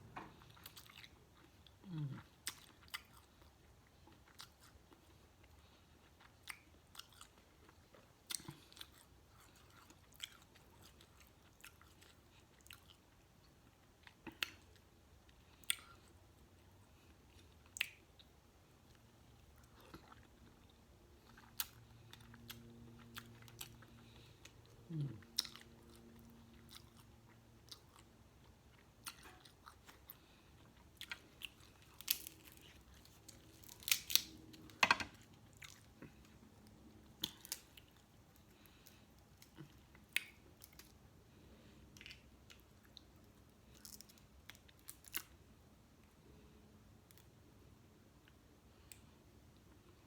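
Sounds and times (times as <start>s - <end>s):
faint low hum: 0.0s - 50.0s
chewing and mouth smacks: 18.9s - 41.0s.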